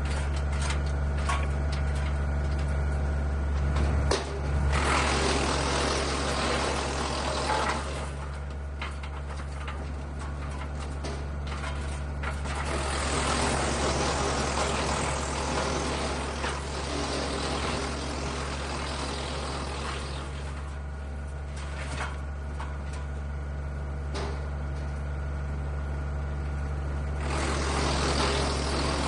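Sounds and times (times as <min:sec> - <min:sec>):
wood chipper engine drone: 0:00.0 - 0:29.0
wood grinding and crackling: 0:00.0 - 0:29.0.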